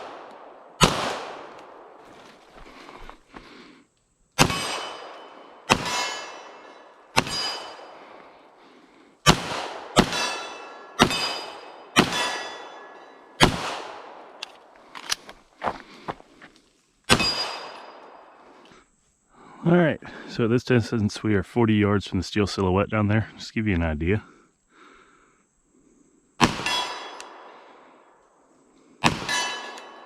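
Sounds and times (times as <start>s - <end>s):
pistol shots: 0.0s - 2.0s, 4.4s - 8.0s, 9.2s - 14.4s, 17.1s - 18.1s, 26.4s - 27.5s, 29.0s - 30.0s
steel target ringing: 4.4s - 8.0s, 10.0s - 13.3s, 17.1s - 18.2s, 29.2s - 30.0s.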